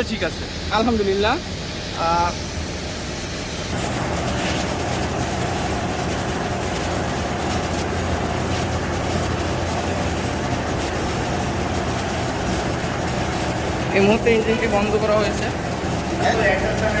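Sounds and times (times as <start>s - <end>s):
continuous low hum: 0.0s - 17.0s
pump engine running: 0.0s - 17.0s.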